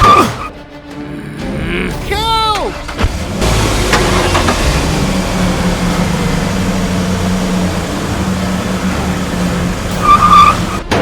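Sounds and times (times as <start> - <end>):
truck engine running: 2.6 - 11.0.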